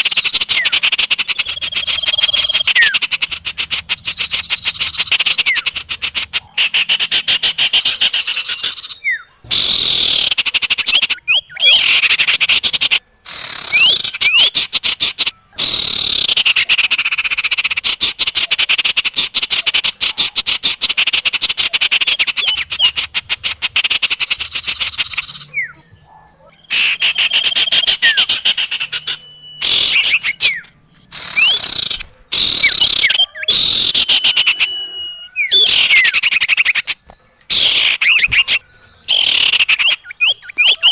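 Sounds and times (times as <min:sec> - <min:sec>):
rising whistled bird notes: 0:00.0 - 0:12.7, 0:13.3 - 0:14.6, 0:23.8 - 0:40.9
songbirds buzzing trills: 0:00.0 - 0:40.9.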